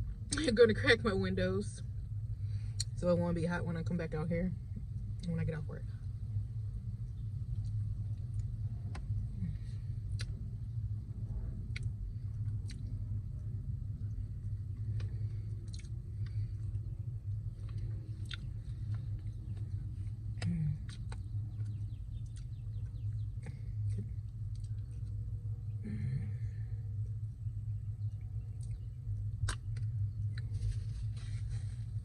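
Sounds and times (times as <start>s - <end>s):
low hum inside car: 0.0s - 32.0s
wet chewing and mouth clicks: 10.0s - 10.5s, 11.6s - 14.2s, 14.8s - 25.2s, 28.0s - 30.5s.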